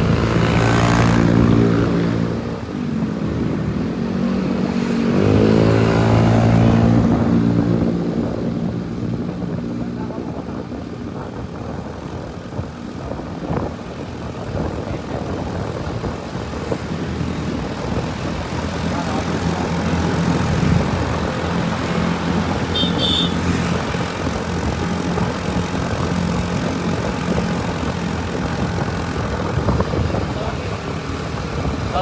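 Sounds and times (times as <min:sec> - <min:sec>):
road traffic noise: 0:00.0 - 0:32.0
vehicle engine running: 0:15.8 - 0:32.0.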